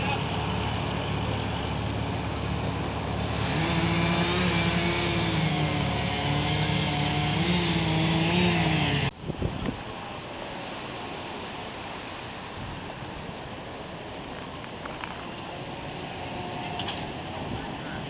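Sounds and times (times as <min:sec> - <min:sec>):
vehicle engine running: 0:00.0 - 0:09.1.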